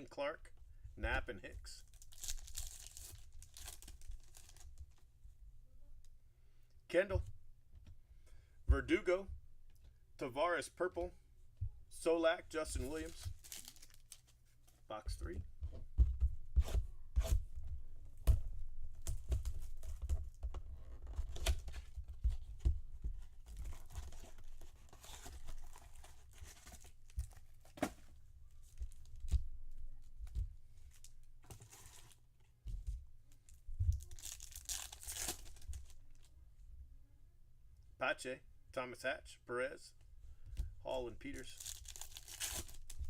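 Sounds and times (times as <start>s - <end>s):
cardboard and wrappers tearing: 1.9s - 4.8s, 13.4s - 14.3s, 33.9s - 36.3s, 41.3s - 43.0s.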